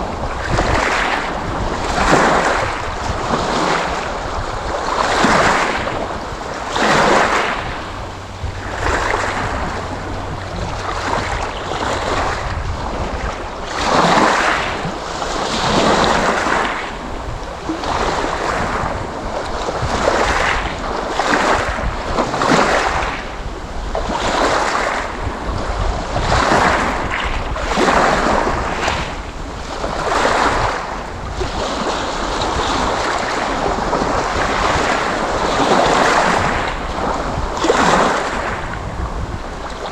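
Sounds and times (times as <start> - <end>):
low wind rumble: 0.0 - 39.9
sea waves washing: 0.0 - 39.9.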